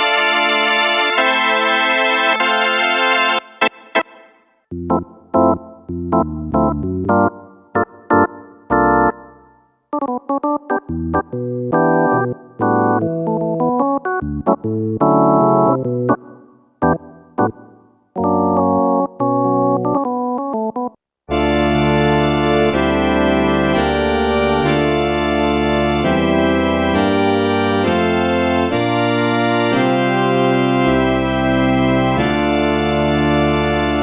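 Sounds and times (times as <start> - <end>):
organ-like synthesizer chords: 0.0 - 34.0
synthesizer chords: 21.3 - 34.0.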